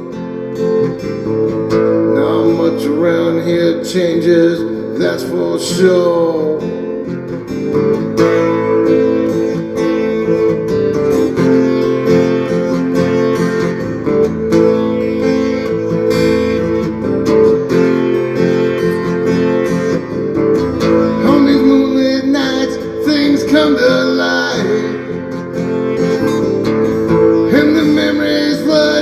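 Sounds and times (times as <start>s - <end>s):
acoustic guitar strumming: 0.0s - 29.0s.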